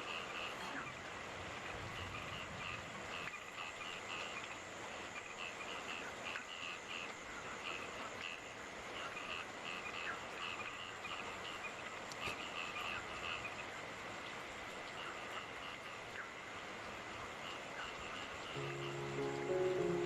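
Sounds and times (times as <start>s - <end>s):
frogs croaking: 0.0s - 20.0s
rain hiss: 11.3s - 20.0s.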